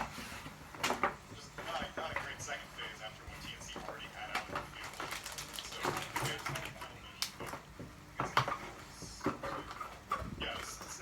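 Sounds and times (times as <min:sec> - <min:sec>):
packaging rustling: 0:04.3 - 0:07.4.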